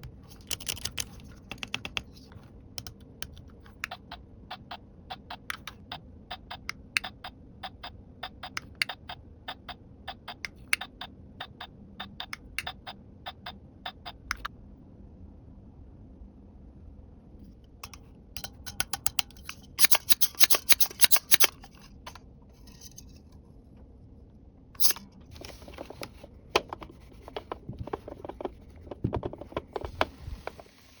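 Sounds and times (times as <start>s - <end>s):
plastic toy pieces clicking: 18.4s - 22.2s.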